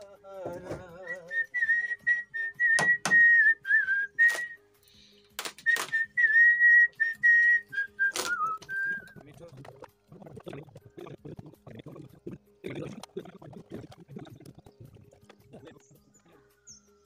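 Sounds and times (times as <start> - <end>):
person whistling a tune: 1.0 - 4.6, 5.6 - 9.2.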